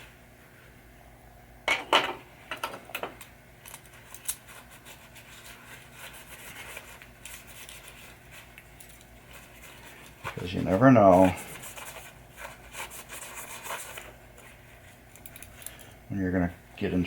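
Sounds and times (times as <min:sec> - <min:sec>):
small metal parts clicking: 0:03.6 - 0:04.4, 0:15.1 - 0:16.0
soft rubbing: 0:04.5 - 0:15.1.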